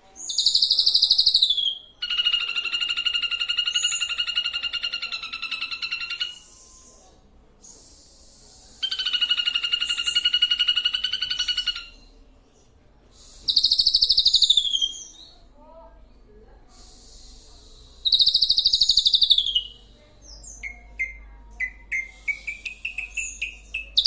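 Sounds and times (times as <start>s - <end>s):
brief hiss: 7.6s - 8.8s, 13.1s - 13.6s, 16.7s - 18.0s
songbird buzzy trill: 18.0s - 24.0s.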